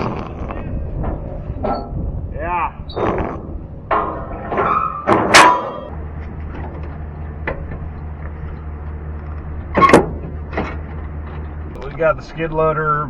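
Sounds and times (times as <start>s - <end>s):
engine humming: 0.0s - 13.0s
sharp metallic clanks: 3.9s - 5.9s.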